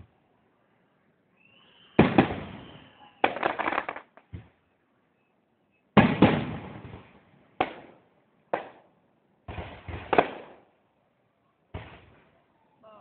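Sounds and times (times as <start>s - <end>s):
fireworks bangs: 1.4s - 4.6s, 6.0s - 10.7s, 11.7s - 12.4s.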